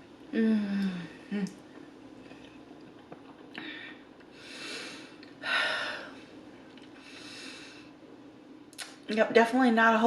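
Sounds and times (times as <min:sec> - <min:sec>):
person breathing heavily: 0:03.6 - 0:06.2.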